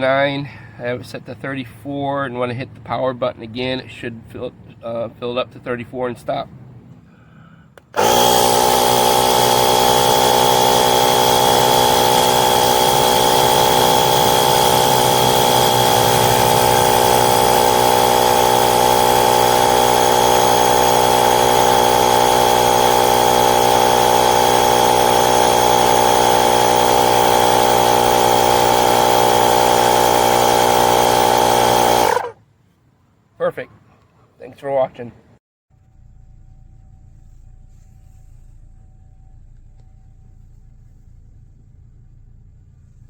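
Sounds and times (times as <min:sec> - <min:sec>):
air compressor whirring drone: 0:07.8 - 0:32.4.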